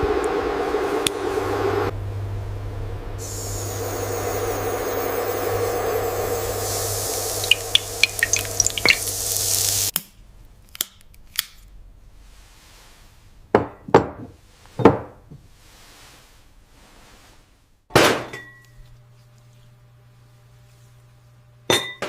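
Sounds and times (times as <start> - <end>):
low steady hum: 0.0 - 9.9
noisy machine hiss: 0.0 - 9.9.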